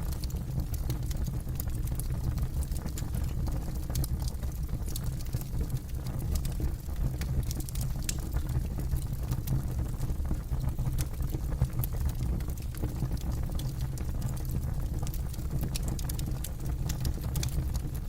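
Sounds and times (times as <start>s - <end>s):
campfire crackling and popping: 0.1s - 18.0s.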